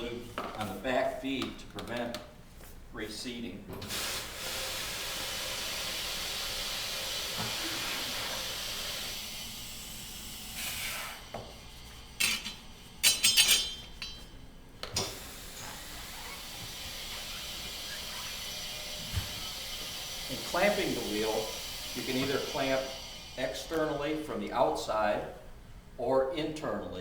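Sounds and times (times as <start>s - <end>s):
compressed air hissing: 3.9s - 13.0s, 15.0s - 24.3s
metal clanks: 12.2s - 14.4s.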